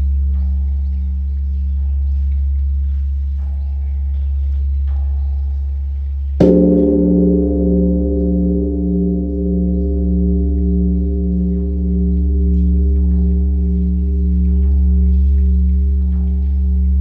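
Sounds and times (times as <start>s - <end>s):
bell ringing with pulsing hum: 6.4s - 17.0s
large bronze bell struck: 6.4s - 17.0s.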